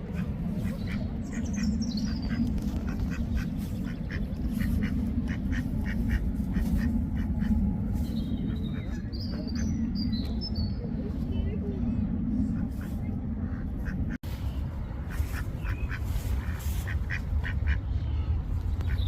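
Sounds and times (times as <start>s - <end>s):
ducks quacking: 0.0s - 9.9s, 12.5s - 14.2s, 15.0s - 18.0s
constant low rumble: 0.0s - 19.0s
small birds chirping: 0.6s - 12.1s.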